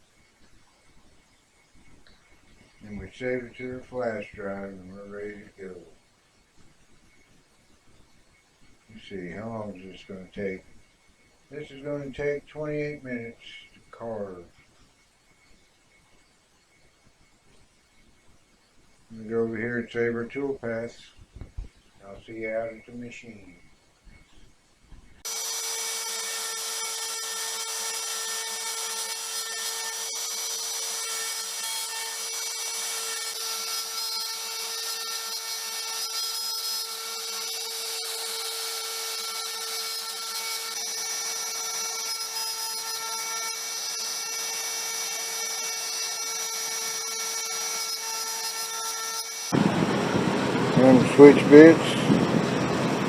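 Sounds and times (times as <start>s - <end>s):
router spindle whining: 25.2s - 53.0s.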